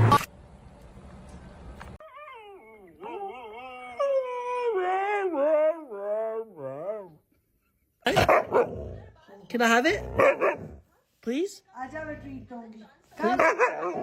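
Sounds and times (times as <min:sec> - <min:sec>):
dog howling: 0:02.0 - 0:07.2.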